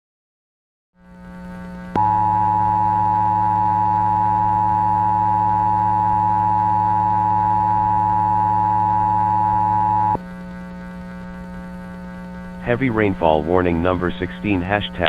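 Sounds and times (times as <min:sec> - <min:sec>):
low steady hum: 0:01.1 - 0:15.0.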